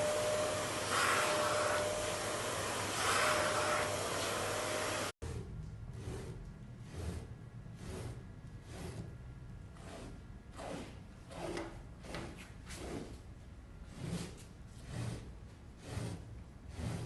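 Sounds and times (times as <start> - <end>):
vacuum nozzle swishing on carpet: 0.1 - 5.1.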